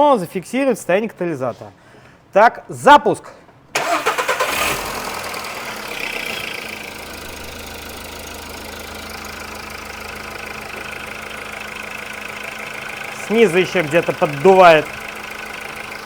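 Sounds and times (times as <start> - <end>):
car engine idling: 3.8 - 16.0
exhaust leak blowing: 3.8 - 16.0.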